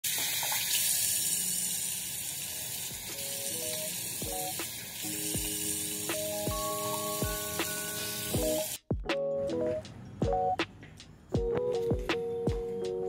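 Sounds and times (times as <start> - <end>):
electronic music: 3.1 - 13.0.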